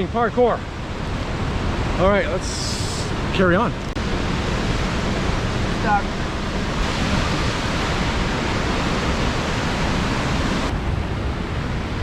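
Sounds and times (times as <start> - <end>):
waterfall rushing: 4.0 - 10.7.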